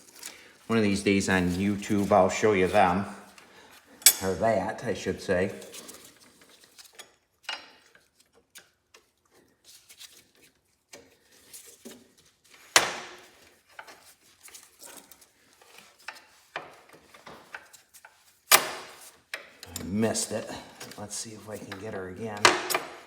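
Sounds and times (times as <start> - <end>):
metal parts and tools clinking: 4.0 - 4.5, 13.7 - 23.0.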